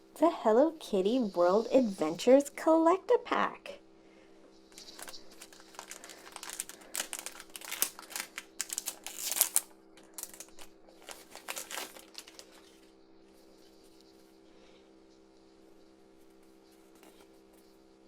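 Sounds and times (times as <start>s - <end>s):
plastic packaging crinkling: 4.7s - 14.0s.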